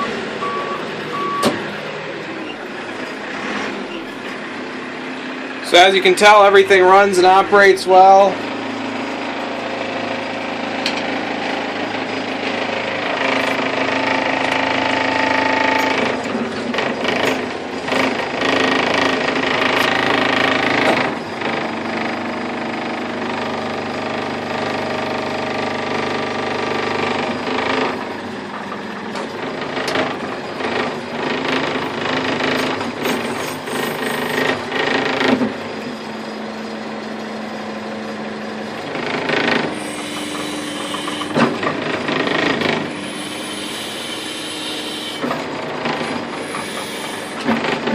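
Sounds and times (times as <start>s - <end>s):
backhoe diesel engine running: 0.0s - 47.9s
knocks and clanks: 1.3s - 1.8s, 38.9s - 42.9s, 45.2s - 47.9s.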